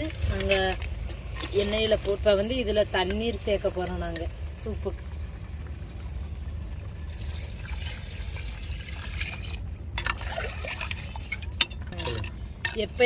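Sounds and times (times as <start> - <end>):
water pouring into a pot: 7.0 - 11.6.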